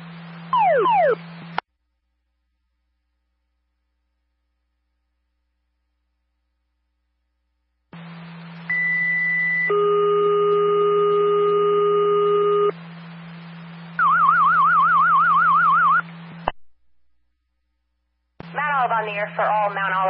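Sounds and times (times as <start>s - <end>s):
low hum: 0.0s - 20.0s
fast warbling alert tone: 0.6s - 1.2s
two-tone radio page: 18.4s - 20.0s.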